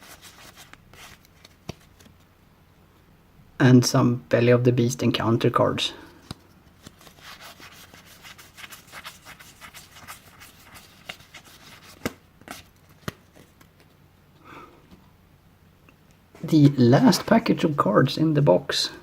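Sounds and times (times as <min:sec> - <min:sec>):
cards sliding and flipping: 0:00.0 - 0:02.2, 0:06.1 - 0:14.0.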